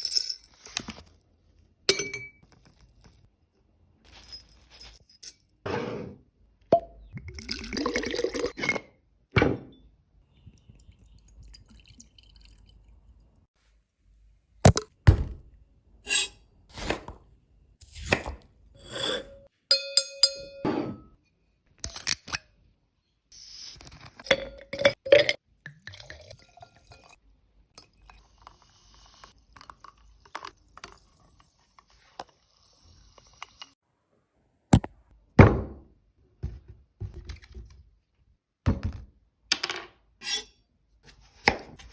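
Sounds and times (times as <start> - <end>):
glassware knocks and clinks: 1.9 - 2.4, 19.7 - 21.1.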